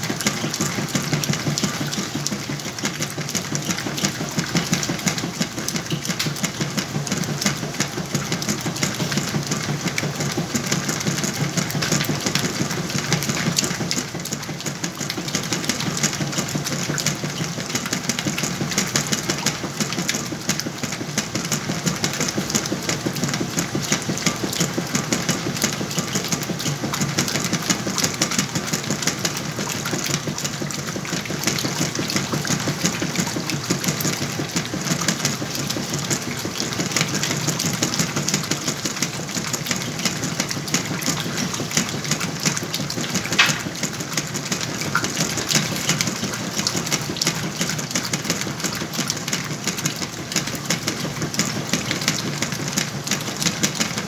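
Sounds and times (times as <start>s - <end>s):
washing machine motor hum: 0.0s - 54.0s
fine even rattle: 43.2s - 44.0s.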